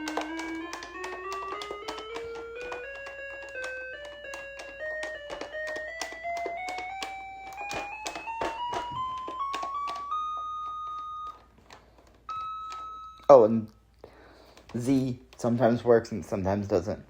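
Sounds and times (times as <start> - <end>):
toy key clicks: 0.0 - 11.0
electronic beeping scale: 12.3 - 13.3.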